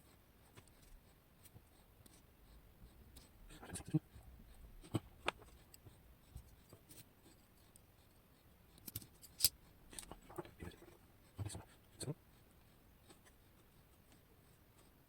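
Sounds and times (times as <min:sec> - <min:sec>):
metallic clicks of lock parts: 0:08.8 - 0:09.6.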